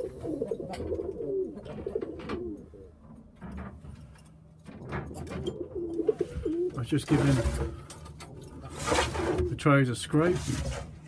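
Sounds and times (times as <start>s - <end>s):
pigeons cooing: 0.0s - 3.4s, 4.9s - 9.6s
light knocks and scrapes: 6.1s - 11.0s.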